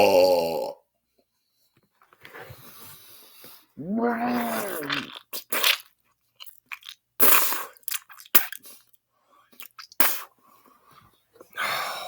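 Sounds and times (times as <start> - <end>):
saliva spits and smacks: 4.3 - 8.9, 9.6 - 10.3.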